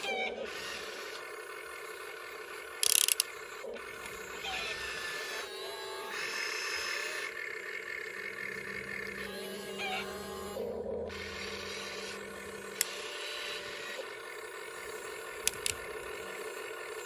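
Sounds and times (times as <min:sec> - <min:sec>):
toy electric motors whirring: 0:00.0 - 0:17.0.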